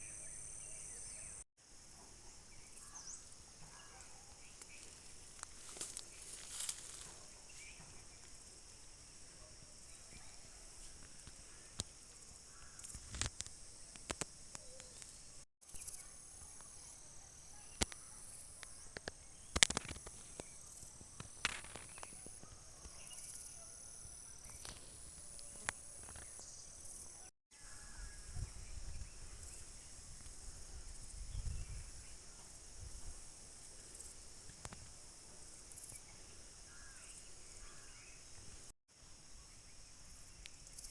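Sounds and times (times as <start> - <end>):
insect chorus hiss: 0.0 - 40.9
sharp clicks and snaps: 12.8 - 15.2, 18.6 - 20.2.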